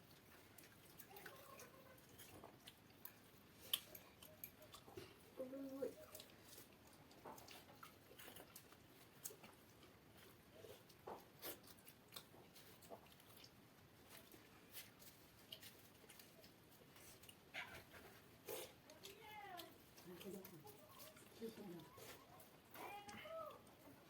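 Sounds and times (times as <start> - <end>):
person chewing: 0.0 - 23.8
soft mouth clicks and smacks: 0.3 - 5.2.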